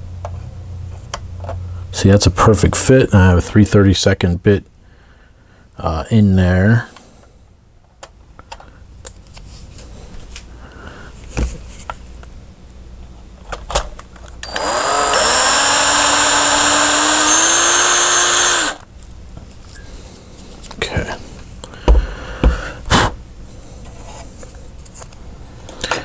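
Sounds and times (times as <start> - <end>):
electric drill whining: 14.4 - 18.9.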